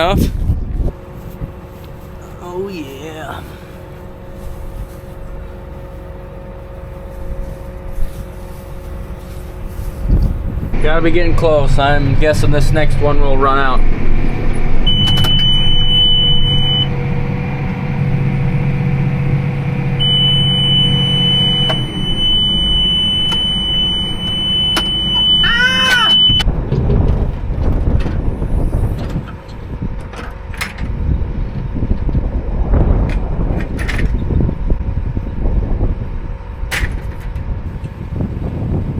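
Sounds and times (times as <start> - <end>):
machinery rattling rumble: 0.0 - 25.5, 26.1 - 38.9
tractor engine running: 0.0 - 38.9
high-pitched alarm beep: 14.9 - 16.9, 20.0 - 26.4.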